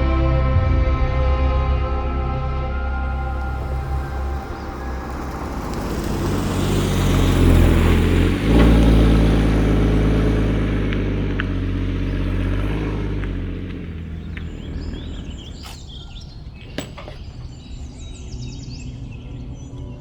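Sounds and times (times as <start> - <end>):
car engine accelerating: 3.0 - 18.0.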